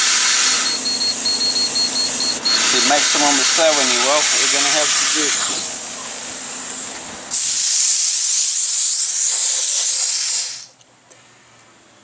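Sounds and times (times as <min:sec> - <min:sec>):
compressed air hissing from hose: 0:00.0 - 0:10.8.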